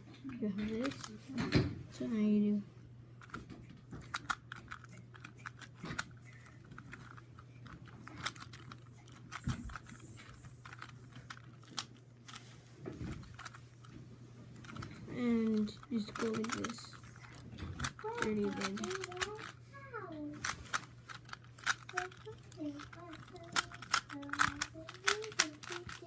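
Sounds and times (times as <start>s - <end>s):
puzzle cube plastic clicks: 0.6s - 1.4s, 3.2s - 12.4s, 13.1s - 13.8s, 14.6s - 19.6s, 20.4s - 26.0s.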